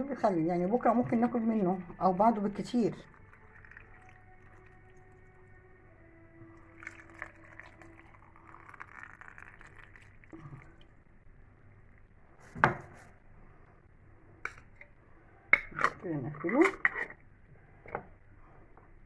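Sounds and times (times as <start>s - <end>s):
water pouring into glass jar: 2.3s - 11.0s.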